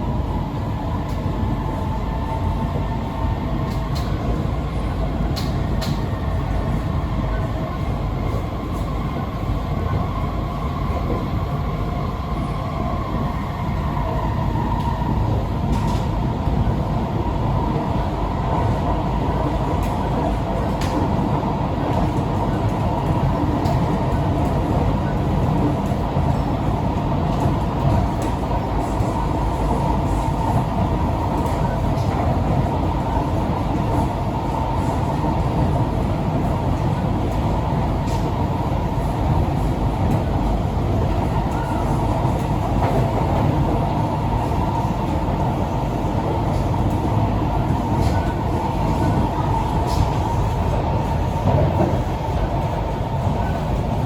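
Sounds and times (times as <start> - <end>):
train wheels and motors rumbling: 0.0 - 54.0
light clicks from track: 3.7 - 4.2, 5.4 - 6.1.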